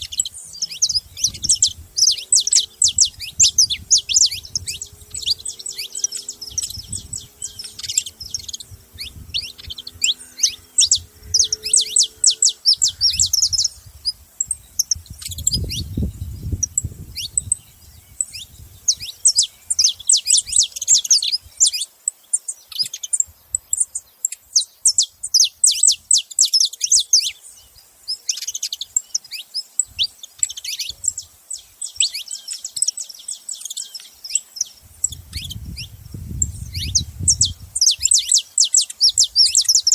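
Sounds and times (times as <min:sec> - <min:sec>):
finch chirping: 0:00.0 - 0:39.9.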